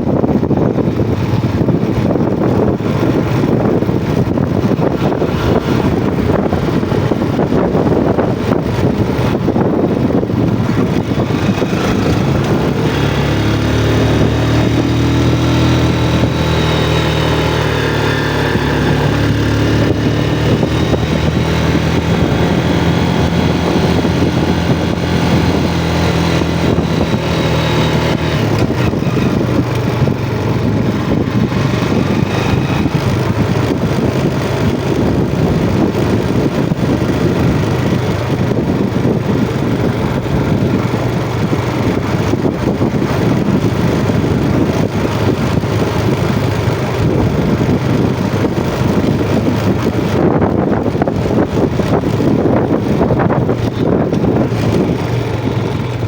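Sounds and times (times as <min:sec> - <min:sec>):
motorcycle engine running: 0:00.0 - 0:56.0
wind noise on microphone: 0:00.0 - 0:56.0.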